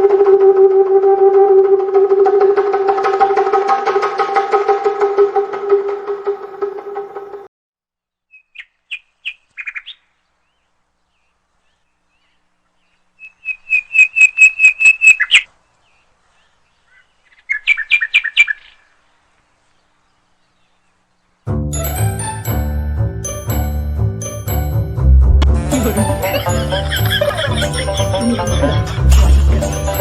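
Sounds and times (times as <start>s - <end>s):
bird-like chirping: 8.3s - 21.4s.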